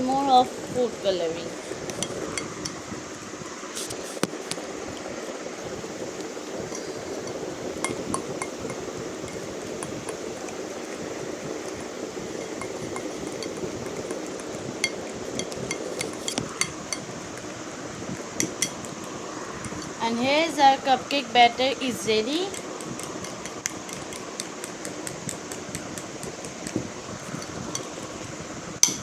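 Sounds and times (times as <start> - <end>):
utensil stirring batter: 5.6 - 29.0
clinks against bowl: 6.7 - 9.9, 12.3 - 14.2, 14.8 - 17.1, 18.4 - 18.9, 27.4 - 28.0.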